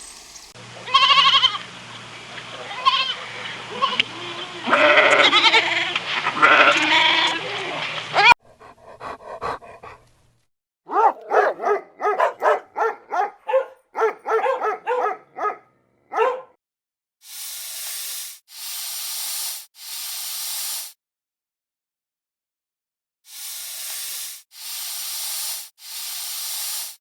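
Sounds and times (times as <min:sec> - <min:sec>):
animal bleating: 0:00.8 - 0:01.6, 0:02.6 - 0:08.3
sharp yelping barks: 0:10.9 - 0:16.6
animal hissing: 0:17.3 - 0:21.0, 0:23.3 - 0:27.0.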